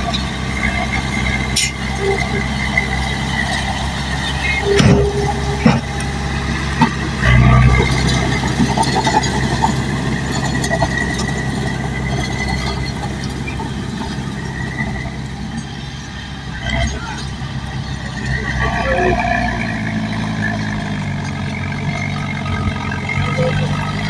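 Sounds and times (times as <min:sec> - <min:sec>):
bulldozer diesel engine running: 0:00.0 - 0:24.0
sharp metal clanks: 0:01.6 - 0:02.0.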